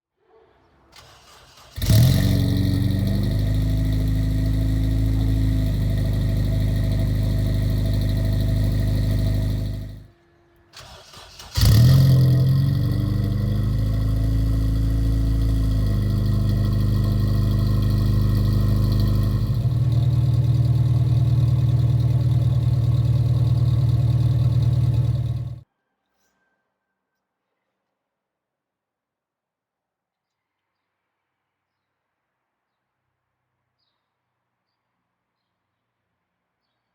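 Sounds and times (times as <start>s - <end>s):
car engine starting and idling: 1.0s - 10.1s, 10.8s - 25.6s.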